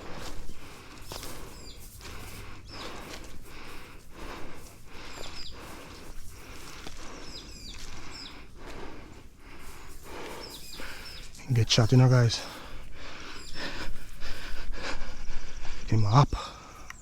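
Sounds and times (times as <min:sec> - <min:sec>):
footsteps through rustling ground cover: 0:00.0 - 0:17.0
small bird chirping: 0:01.1 - 0:03.3, 0:05.0 - 0:09.2, 0:09.9 - 0:12.3, 0:13.2 - 0:13.9.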